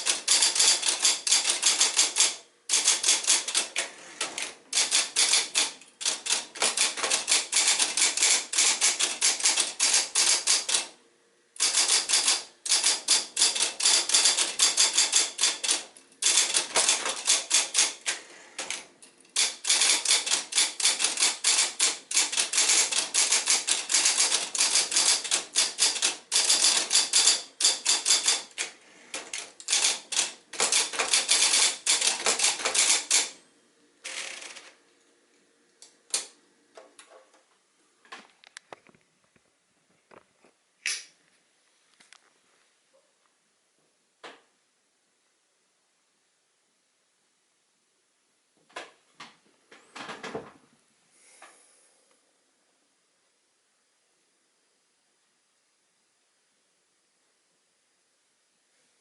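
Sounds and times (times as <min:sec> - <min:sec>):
typewriter keys clacking: 0:00.0 - 0:10.9, 0:11.6 - 0:33.4.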